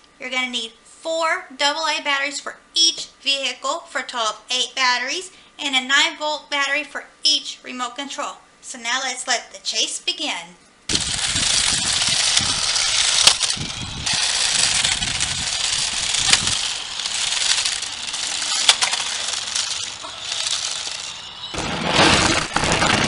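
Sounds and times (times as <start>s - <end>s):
sharp clicks: 10.9s - 21.6s
plastic wheels scraping and rattling: 10.9s - 23.0s
small electric motors buzzing: 10.9s - 23.0s.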